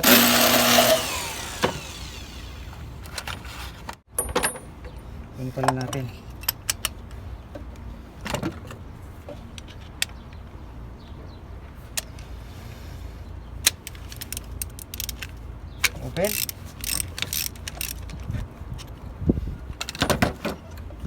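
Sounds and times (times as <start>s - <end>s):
metal tools clinking: 4.1s - 5.1s.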